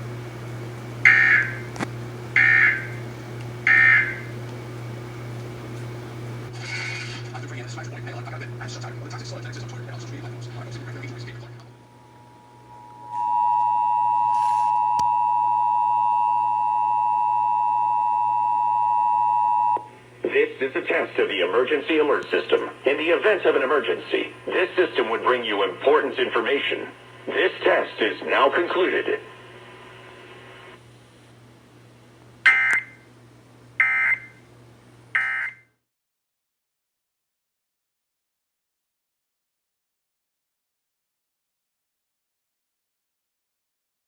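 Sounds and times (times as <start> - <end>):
low mains hum: 0.0 - 35.8
two-tone alarm signal: 1.0 - 1.7, 2.4 - 3.0, 3.6 - 4.4, 12.2 - 19.9, 32.5 - 33.1, 33.8 - 34.4, 35.2 - 35.7
harsh digital data bursts: 1.1 - 1.6.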